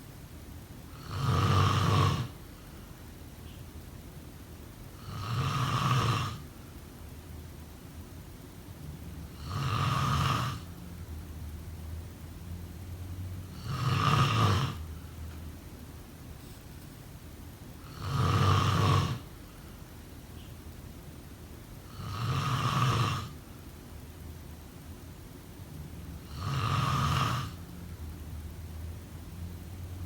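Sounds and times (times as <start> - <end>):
person snoring: 0.9 - 2.4, 5.0 - 6.4, 9.3 - 10.7, 13.5 - 15.0, 17.8 - 19.3, 21.9 - 23.4, 26.2 - 27.6.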